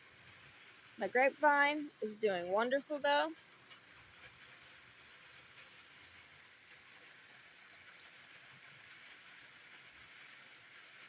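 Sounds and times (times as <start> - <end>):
faint steady rain: 0.0 - 11.0.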